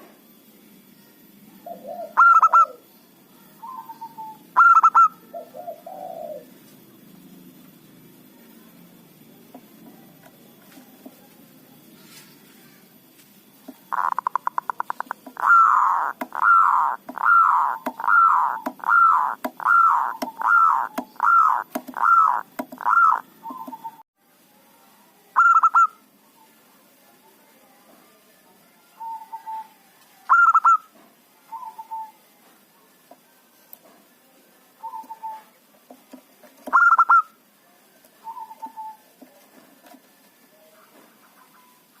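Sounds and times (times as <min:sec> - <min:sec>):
dove cooing: 0:01.6 - 0:02.9, 0:03.6 - 0:06.6, 0:13.9 - 0:24.0, 0:30.3 - 0:30.8, 0:34.8 - 0:35.6, 0:36.7 - 0:37.3, 0:38.2 - 0:39.0.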